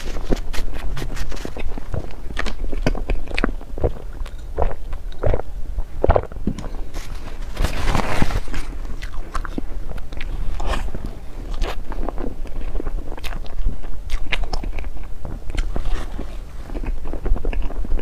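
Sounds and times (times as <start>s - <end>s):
loud crunch: 0.0s - 3.4s, 6.6s - 9.6s
chewing crunchy dessert: 0.0s - 18.0s.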